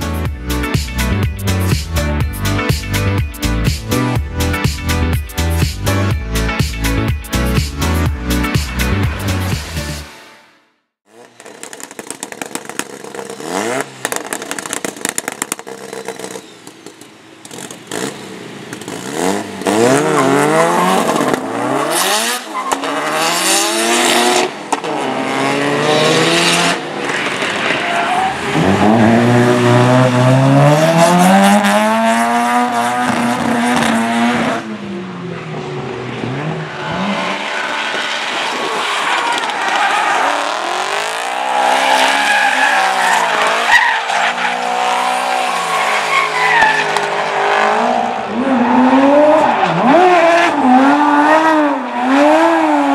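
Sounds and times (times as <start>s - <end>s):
car engines revving: 11.1s - 52.9s
tyre squeal: 15.7s - 17.1s, 38.6s - 47.2s.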